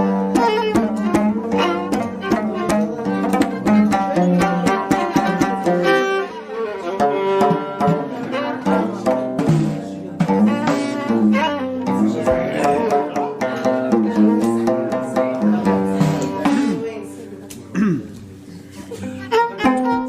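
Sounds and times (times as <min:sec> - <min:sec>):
hand percussion beat: 0:00.0 - 0:06.1, 0:07.4 - 0:16.9
plucked strings: 0:00.0 - 0:17.0, 0:19.0 - 0:20.0
bowed string melody: 0:00.0 - 0:17.4, 0:19.0 - 0:20.0.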